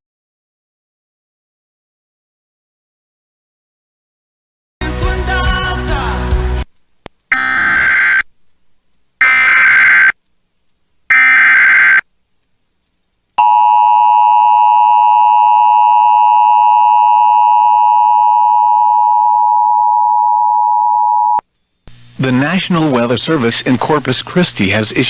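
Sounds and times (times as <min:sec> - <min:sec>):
screeching digital header bursts: 0:07.3 - 0:08.2, 0:09.2 - 0:10.2, 0:11.1 - 0:12.0
two-tone attention signal: 0:07.3 - 0:08.2, 0:09.2 - 0:10.1, 0:11.1 - 0:12.0.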